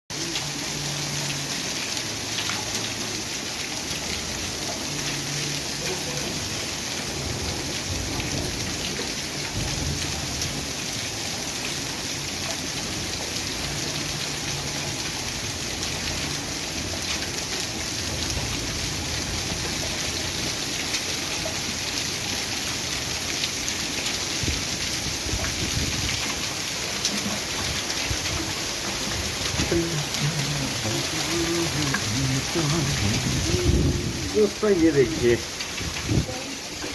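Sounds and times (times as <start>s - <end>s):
heavy rain: 0.1s - 36.9s
hailstones ticking: 12.6s - 36.9s.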